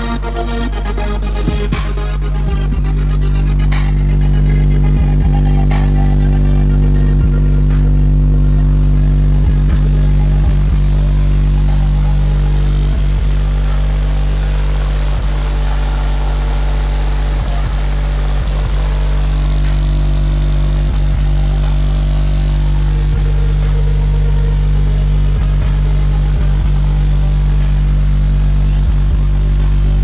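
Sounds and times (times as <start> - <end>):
low bass drone: 0.0 - 30.0.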